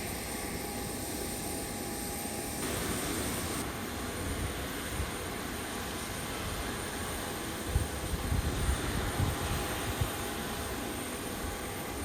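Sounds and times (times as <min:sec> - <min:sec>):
jet engines running: 0:00.0 - 0:12.0.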